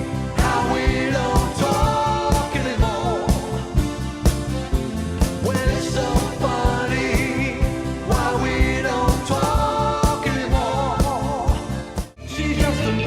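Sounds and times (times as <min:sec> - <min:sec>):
pop-rock band music: 0:00.0 - 0:13.0
steady drum beat: 0:00.0 - 0:13.0
person singing: 0:00.4 - 0:03.7, 0:05.5 - 0:13.0.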